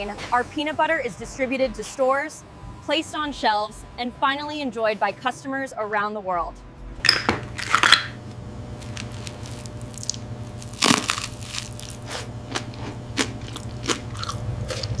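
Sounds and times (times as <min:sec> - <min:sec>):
steady low hum: 0:06.5 - 0:15.0
irregular crunches and crackles: 0:07.5 - 0:15.0.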